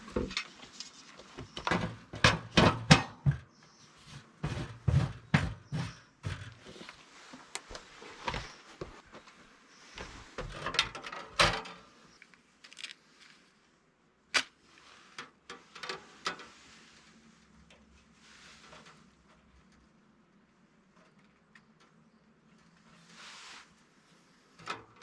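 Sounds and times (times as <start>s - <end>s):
objects knocking and clattering: 1.4s - 3.6s, 4.2s - 6.8s.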